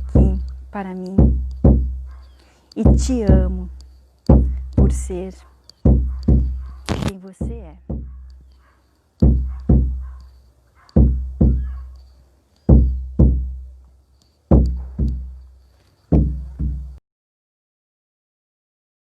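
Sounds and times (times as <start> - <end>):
deep frame drum beats: 0.0 - 2.2, 2.8 - 8.3, 9.2 - 10.2, 11.0 - 11.8, 12.7 - 13.7, 14.5 - 15.4, 16.1 - 17.0.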